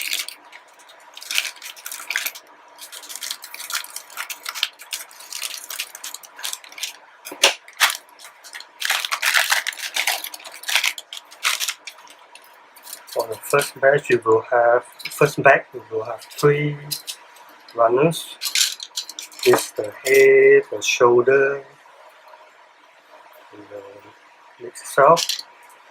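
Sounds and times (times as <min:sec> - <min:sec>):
plastic bags crinkling: 0:00.0 - 0:13.8, 0:18.3 - 0:20.2.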